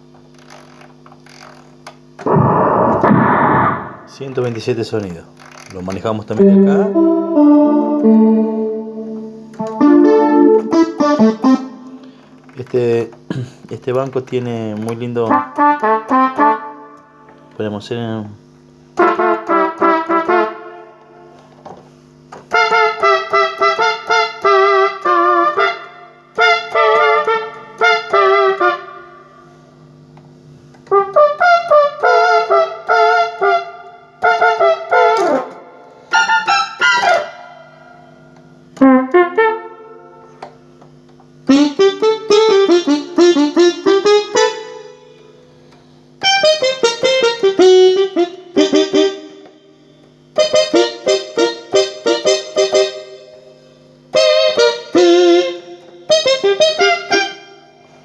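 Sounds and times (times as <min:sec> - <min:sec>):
synthesizer keyboard phrases: 0:02.2 - 0:18.4, 0:31.0 - 0:38.0, 0:41.4 - 0:45.4, 0:46.2 - 0:49.6, 0:50.4 - 0:53.4, 0:54.2 - 0:57.6.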